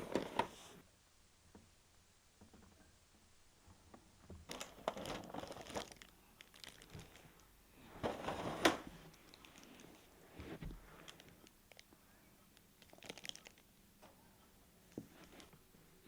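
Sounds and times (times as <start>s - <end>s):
packaging crinkling: 4.5s - 7.4s, 9.1s - 10.0s, 12.8s - 13.6s.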